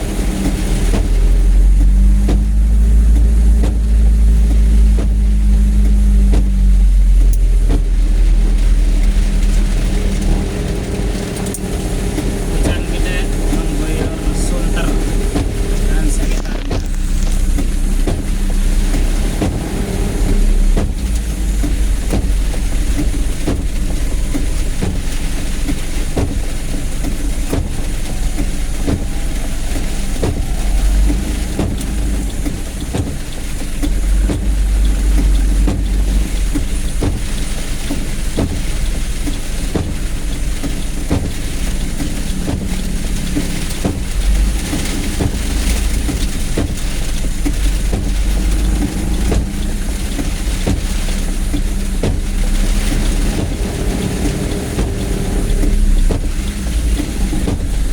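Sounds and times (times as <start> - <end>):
heavy rain hiss: 0.0 - 57.9
low engine rumble: 0.0 - 57.9.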